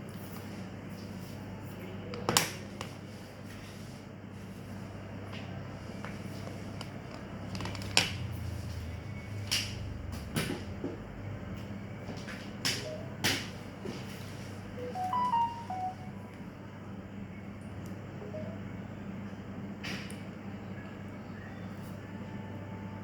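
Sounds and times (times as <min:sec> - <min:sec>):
steady low hum: 0:00.0 - 0:23.0
short high tones: 0:14.8 - 0:16.3.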